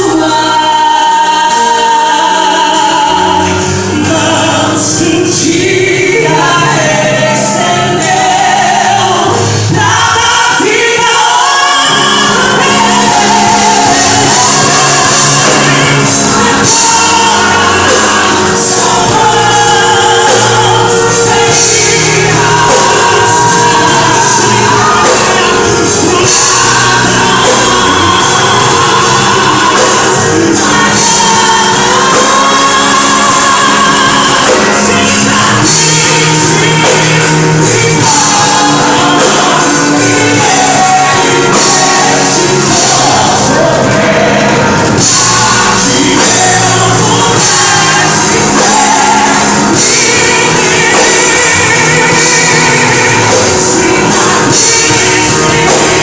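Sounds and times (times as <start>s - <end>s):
backing band: 0.0s - 56.0s
voices singing with vibrato: 0.0s - 56.0s.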